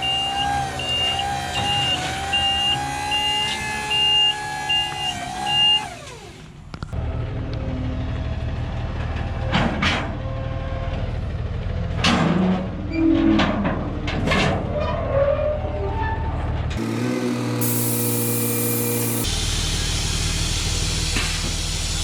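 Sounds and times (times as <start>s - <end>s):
hisses: 17.6s - 19.4s
truck engine humming: 17.6s - 19.8s.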